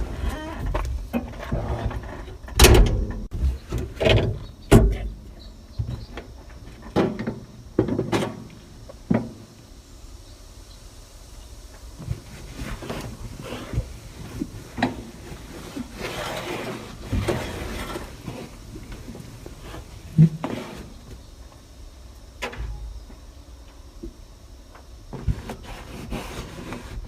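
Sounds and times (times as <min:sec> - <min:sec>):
knocks and clunks: 0:00.0 - 0:09.5.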